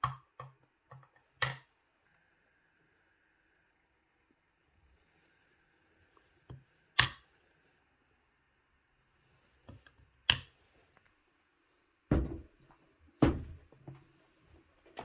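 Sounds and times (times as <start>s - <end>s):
heavy thuds of objects set down: 12.1s - 12.6s, 13.2s - 13.6s.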